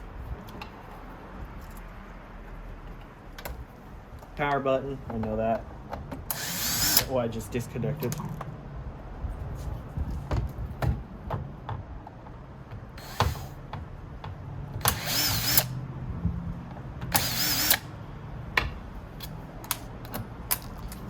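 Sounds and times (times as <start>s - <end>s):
electric screwdriver whirring: 6.3s - 7.1s, 13.0s - 13.6s, 14.8s - 15.8s, 17.1s - 17.9s.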